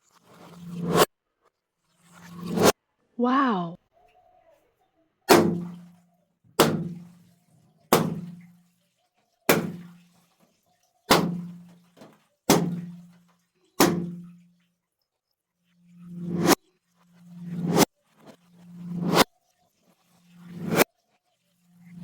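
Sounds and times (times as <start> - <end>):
water balloons bursting: 5.3 - 5.9, 6.6 - 7.2, 7.9 - 8.6, 9.5 - 10.1, 11.1 - 13.2, 13.8 - 14.4.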